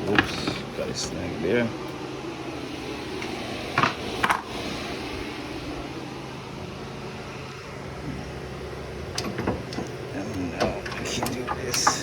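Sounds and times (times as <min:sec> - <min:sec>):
steady background hum: 0:00.0 - 0:12.0.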